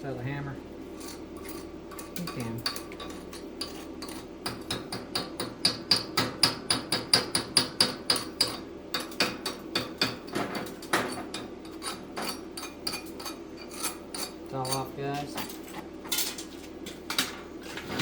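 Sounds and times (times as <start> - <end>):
hand tool scraping steel weld: 0.9 - 5.0, 10.6 - 16.6.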